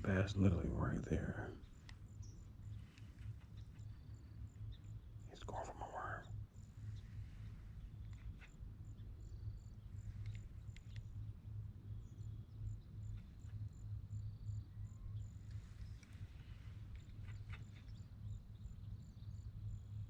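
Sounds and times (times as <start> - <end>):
cricket chirping: 0.0 - 20.0
low steady rumble: 0.0 - 20.0
faint clicks: 1.0 - 11.4, 12.7 - 14.3, 14.9 - 18.6.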